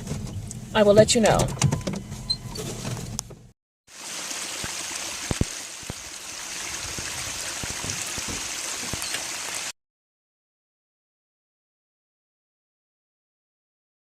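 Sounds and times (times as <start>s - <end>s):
running water: 3.9s - 9.8s.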